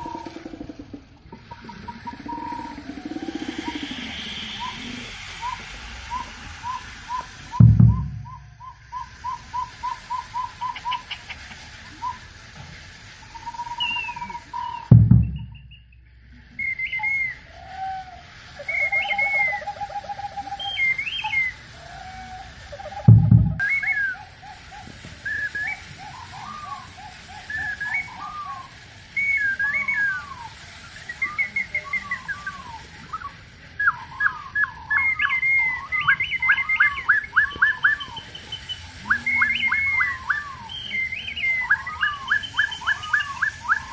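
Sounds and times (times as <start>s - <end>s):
fast trill: 0.0s - 12.4s, 18.5s - 43.9s
imitated owl hoots: 0.0s - 12.4s, 13.2s - 15.8s, 16.6s - 43.9s
falling whistle: 1.4s - 11.2s, 11.9s - 12.4s, 13.3s - 24.3s, 25.2s - 26.9s, 27.5s - 43.9s
deep thump: 7.6s - 8.5s, 14.9s - 15.7s, 23.1s - 23.6s.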